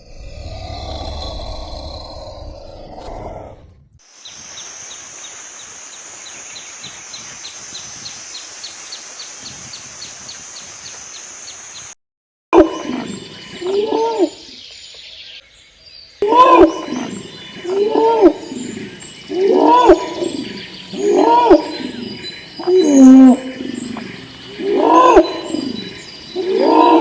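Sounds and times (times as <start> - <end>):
low rough animal call: 0.0 - 3.8
high hiss with chirps: 4.0 - 12.0, 12.6 - 27.0.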